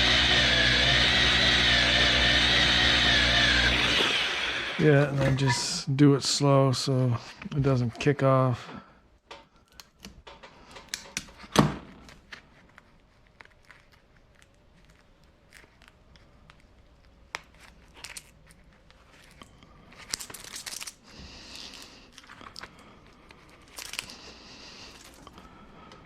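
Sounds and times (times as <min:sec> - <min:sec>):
wire stripper slitting insulation: 0:00.0 - 0:05.6.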